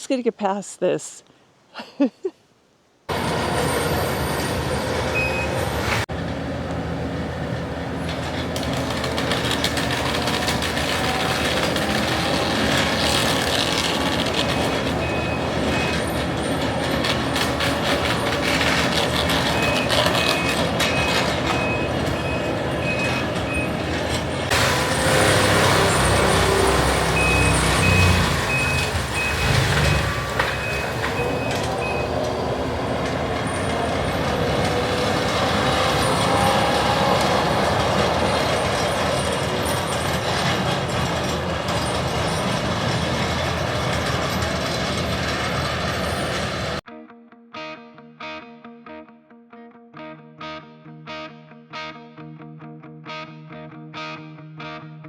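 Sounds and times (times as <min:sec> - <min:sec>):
heavy machinery engine running: 0:03.1 - 0:46.8
reversing alarm beeping: 0:05.1 - 0:05.8, 0:14.4 - 0:16.2, 0:19.4 - 0:24.0, 0:25.8 - 0:32.9.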